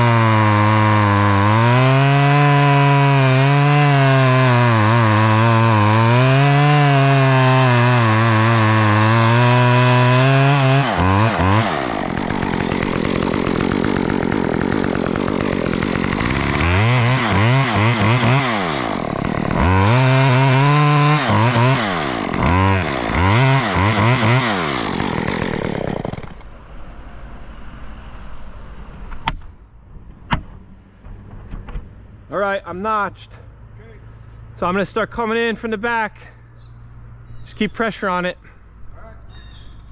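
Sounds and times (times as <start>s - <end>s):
chainsaw cutting wood: 0.0s - 26.5s.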